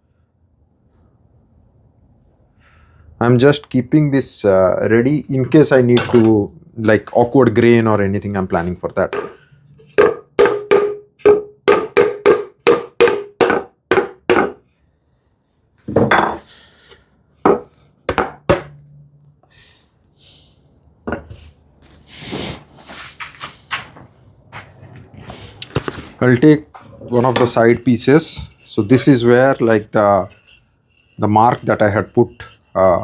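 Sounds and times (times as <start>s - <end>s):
metal hand tool tapping: 9.1s - 14.5s
handling and rustling: 21.2s - 29.8s.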